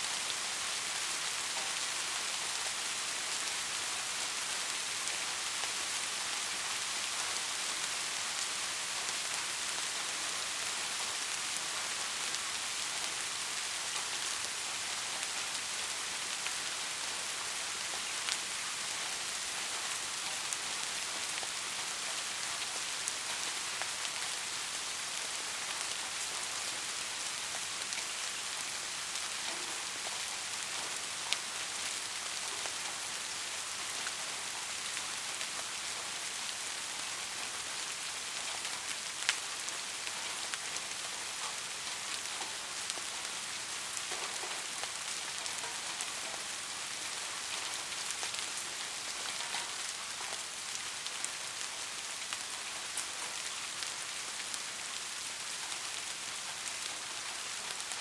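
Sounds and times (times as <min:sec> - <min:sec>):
heavy rain hiss: 0:00.0 - 0:58.0
raindrop ticks: 0:44.0 - 0:46.7.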